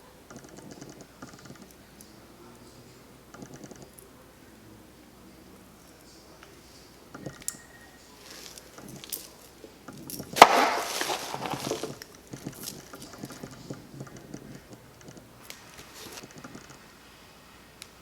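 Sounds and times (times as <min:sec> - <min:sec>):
small clicks and taps: 0:00.3 - 0:02.1, 0:11.9 - 0:16.8
packaging crackling and crinkling: 0:10.2 - 0:13.4.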